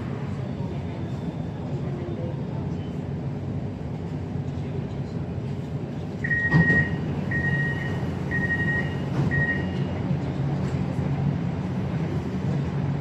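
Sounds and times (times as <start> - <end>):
low train hum: 0.0 - 13.0
high warning beeps: 6.2 - 9.9.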